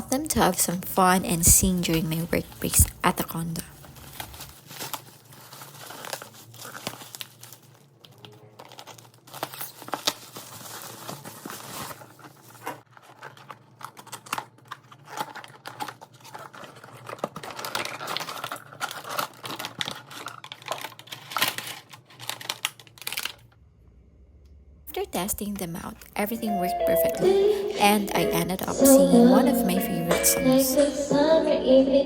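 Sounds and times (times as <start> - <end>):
packaging crinkling and tearing: 1.8 - 23.6.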